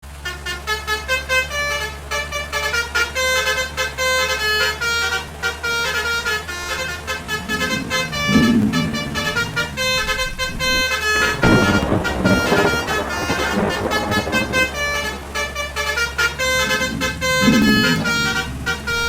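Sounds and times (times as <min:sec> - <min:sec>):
engine humming: 0:00.0 - 0:19.0
multi-tone bus horn tune: 0:00.0 - 0:19.0
low rumble: 0:05.2 - 0:19.0.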